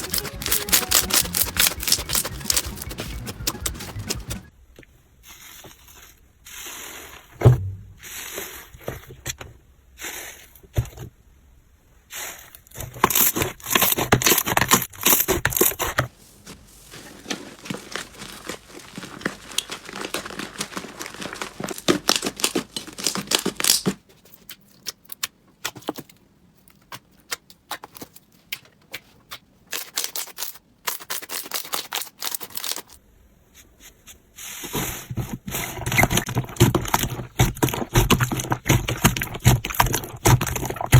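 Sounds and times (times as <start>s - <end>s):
slime crackling and popping: 0.0s - 4.0s, 18.2s - 23.9s.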